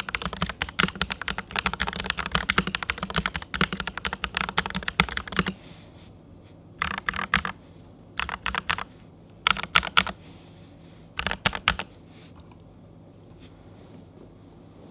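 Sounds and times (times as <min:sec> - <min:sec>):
mechanical keyboard typing: 0:00.0 - 0:05.6, 0:06.8 - 0:07.6, 0:08.2 - 0:10.2, 0:11.2 - 0:11.9.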